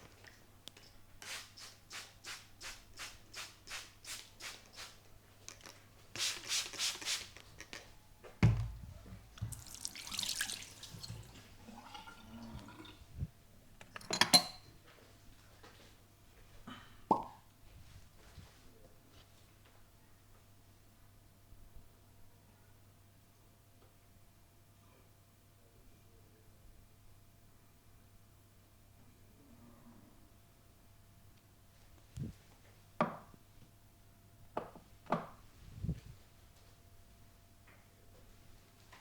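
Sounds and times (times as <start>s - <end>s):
hands rubbing face: 1.2s - 5.0s, 6.2s - 7.8s
soft wet pats on skin: 6.1s - 7.6s.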